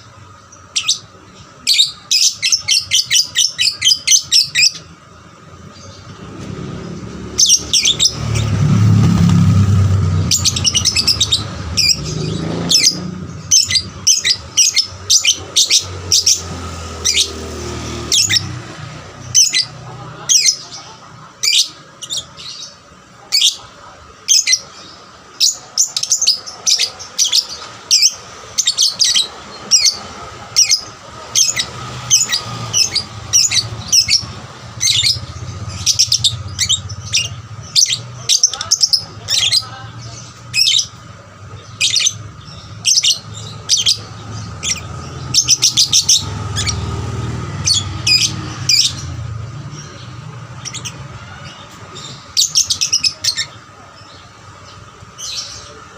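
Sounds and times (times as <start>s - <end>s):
lovebird chirping: 0.0s - 5.0s, 5.6s - 55.9s.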